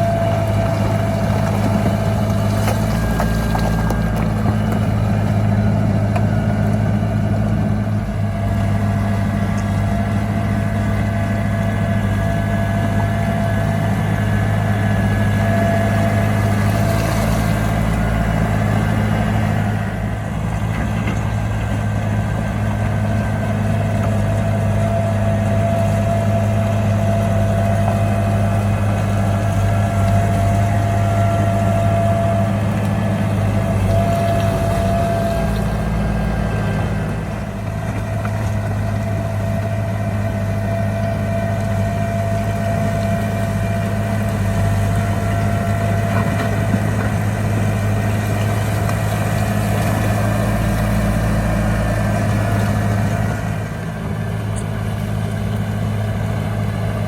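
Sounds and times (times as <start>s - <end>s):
heavy diesel engine droning: 0.0s - 57.0s.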